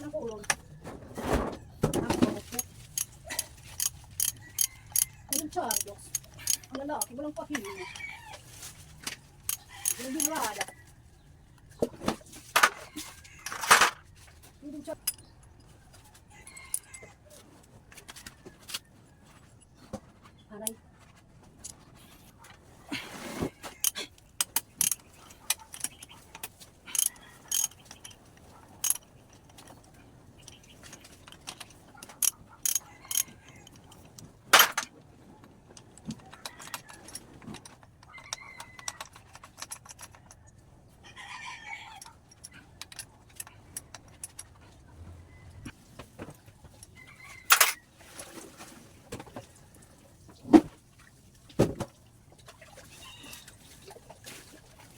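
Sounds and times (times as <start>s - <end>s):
metal tools clinking and tapping: 1.9s - 8.1s, 9.0s - 10.8s, 23.6s - 34.9s, 35.7s - 40.5s, 46.3s - 47.8s.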